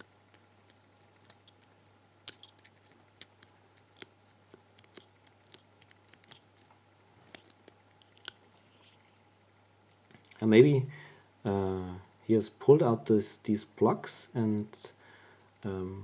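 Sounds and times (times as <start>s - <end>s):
faint low hum: 0.0s - 16.0s.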